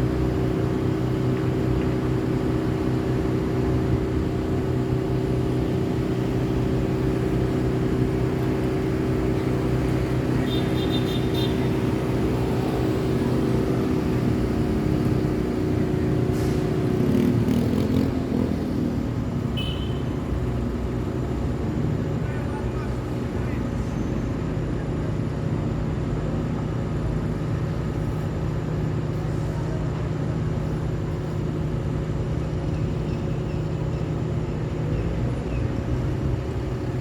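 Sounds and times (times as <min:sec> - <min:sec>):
vehicle engine running: 0:00.0 - 0:37.0.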